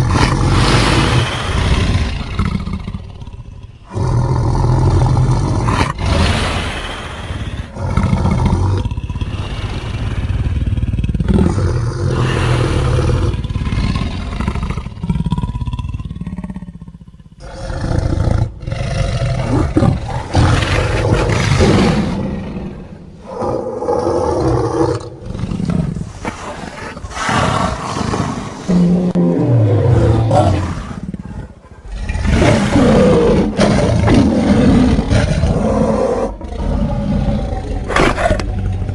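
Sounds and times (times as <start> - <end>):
low growls sliding in pitch: 19.3 - 38.9
creature roars: 26.4 - 31.0, 31.8 - 38.9.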